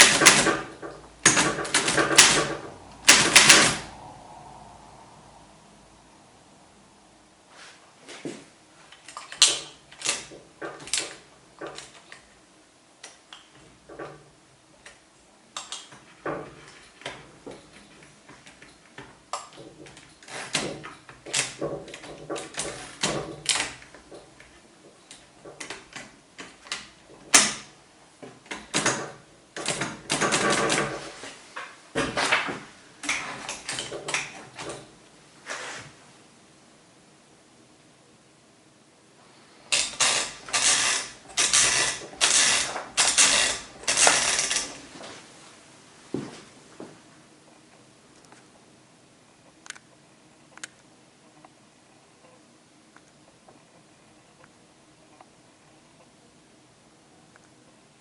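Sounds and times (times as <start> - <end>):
typewriter clacking: 0.0 - 3.8, 28.5 - 31.0, 39.7 - 44.8.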